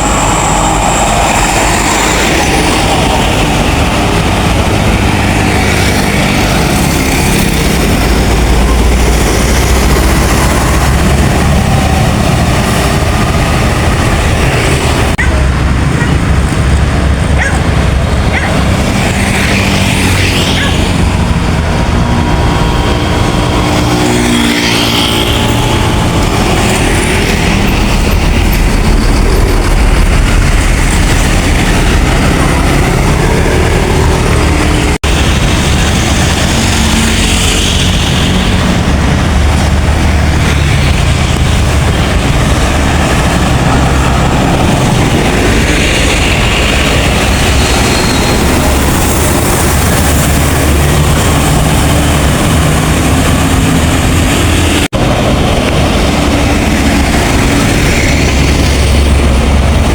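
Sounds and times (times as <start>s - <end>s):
diesel buses passing: 0.0s - 59.9s.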